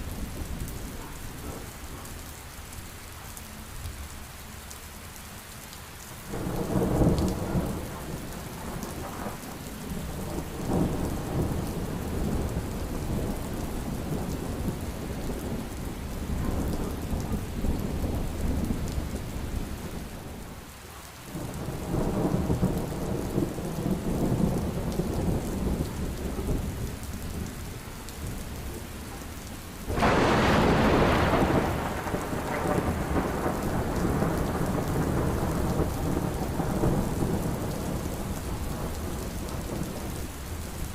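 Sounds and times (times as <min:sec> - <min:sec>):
heavy rain falling: 0:00.0 - 0:40.9
rolling thunder: 0:06.3 - 0:20.4, 0:21.3 - 0:27.5, 0:29.8 - 0:40.2.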